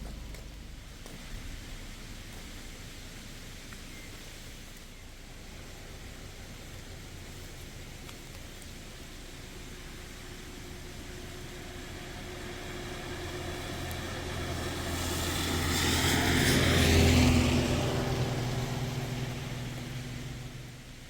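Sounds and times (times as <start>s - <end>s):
vehicle driving past: 9.2s - 21.0s.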